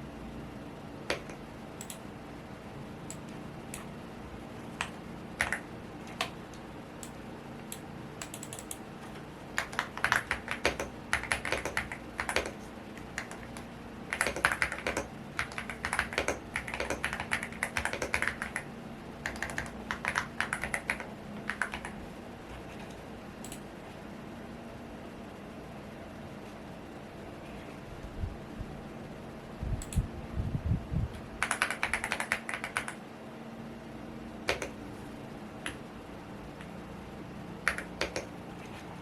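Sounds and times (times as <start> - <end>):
fan hum: 0.0 - 39.0
mechanical keyboard typing: 1.1 - 2.1, 4.8 - 22.0, 31.4 - 33.0, 34.4 - 34.8, 37.6 - 38.3.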